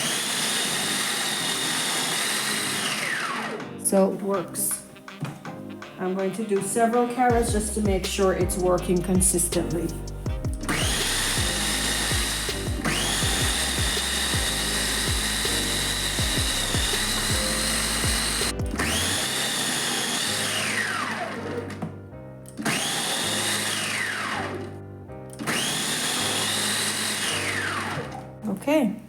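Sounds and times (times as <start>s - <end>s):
food processor motor whining: 0.0s - 3.8s, 10.7s - 24.8s, 25.4s - 28.4s.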